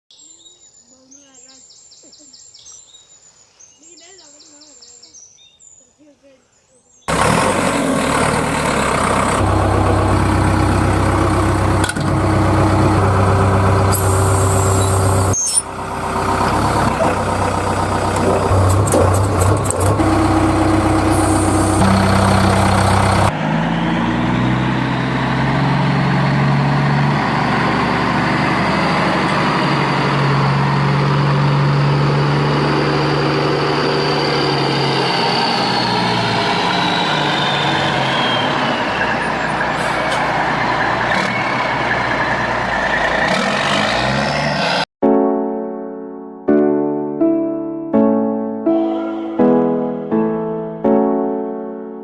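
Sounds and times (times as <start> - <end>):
diesel engines running: 7.1 - 44.9.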